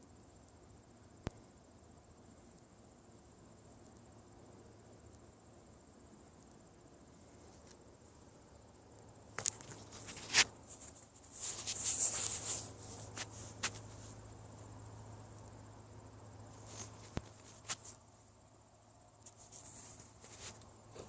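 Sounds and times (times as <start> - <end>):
cricket trill: 0.0 - 21.0
rustling: 9.3 - 14.8, 16.4 - 18.1, 19.2 - 21.0.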